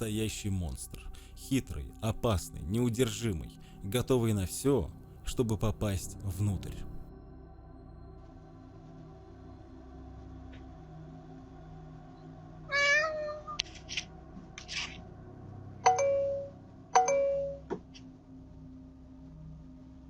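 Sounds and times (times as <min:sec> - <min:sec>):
cat meowing: 0:12.7 - 0:14.0
scratchy noises: 0:13.6 - 0:15.0.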